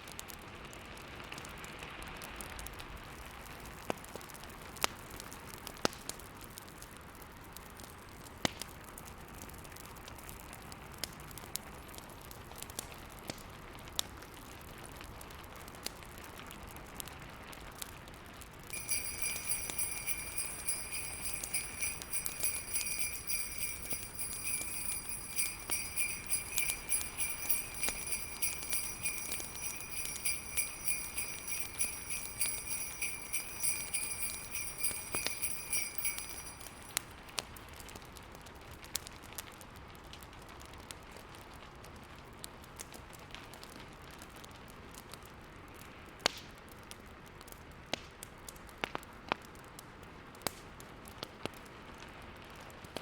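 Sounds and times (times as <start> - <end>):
sleigh bells shaking: 18.7 - 37.1
fireplace crackling and popping: 18.7 - 37.5.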